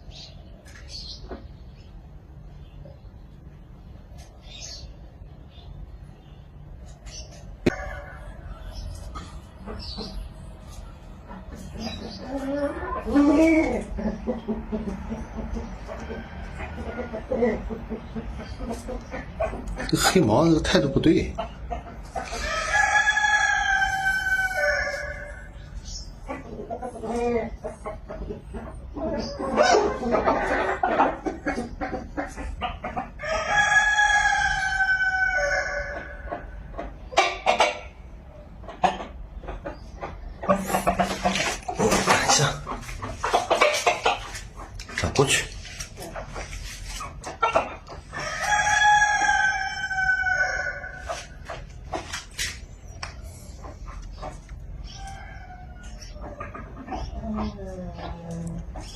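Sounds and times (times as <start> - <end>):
chickens clucking: 0.0 - 58.9
rooster crowing: 7.7 - 8.7, 22.3 - 25.5, 33.2 - 36.2, 48.1 - 51.2.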